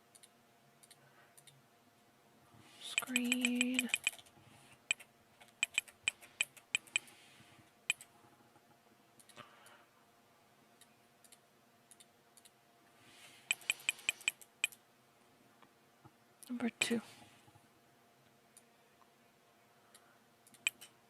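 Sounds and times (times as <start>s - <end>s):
typing on computer keyboard: 0.1s - 1.6s, 3.0s - 4.3s, 4.9s - 7.1s, 7.9s - 8.1s, 13.5s - 14.8s
mouse clicks: 2.9s - 4.2s, 5.6s - 7.1s, 13.5s - 14.8s, 19.9s - 20.9s.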